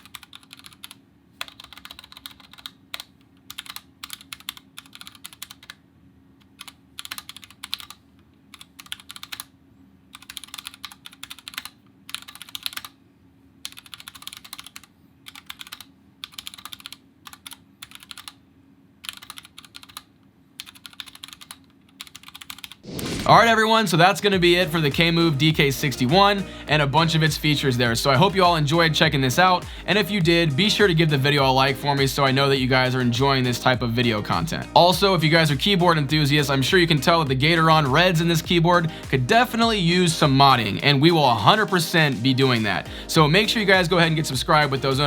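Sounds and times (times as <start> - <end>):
mechanical keyboard typing: 0.0 - 5.8, 6.5 - 9.5, 10.1 - 13.0, 13.6 - 18.4, 19.0 - 23.2.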